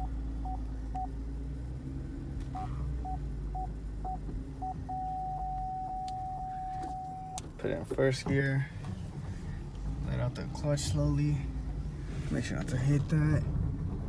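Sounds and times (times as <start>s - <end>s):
parking sensor beeping: 0.0s - 1.1s, 2.5s - 7.5s
car engine idling: 0.0s - 14.0s.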